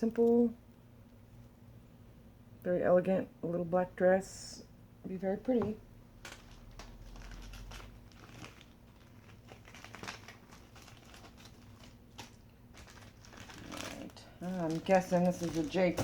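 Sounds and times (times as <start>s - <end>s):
packaging crinkling: 6.3s - 16.0s.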